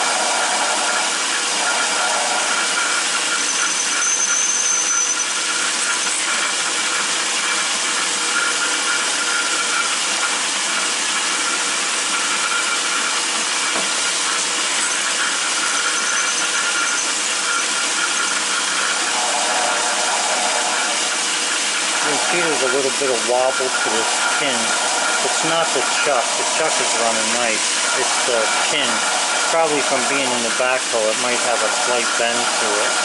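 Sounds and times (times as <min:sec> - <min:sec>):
metal lathe running: 0:00.0 - 0:33.0
thin high squeal: 0:03.4 - 0:05.4, 0:15.7 - 0:18.4.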